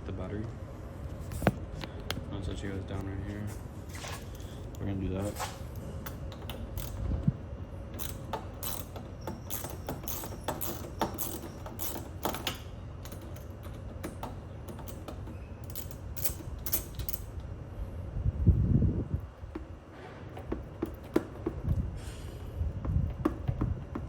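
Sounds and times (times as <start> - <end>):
metallic clicks of hand tools: 8.0 - 17.4.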